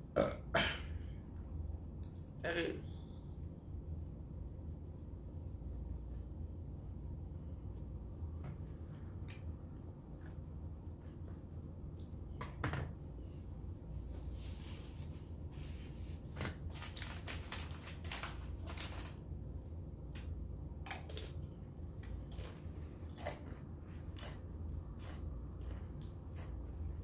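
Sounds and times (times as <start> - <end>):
low steady hum: 0.0 - 27.0
chewing food: 20.8 - 27.0.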